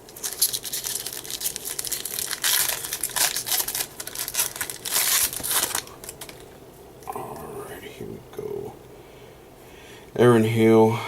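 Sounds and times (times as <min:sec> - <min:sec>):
foil wrapper crinkling: 0:00.1 - 0:06.6.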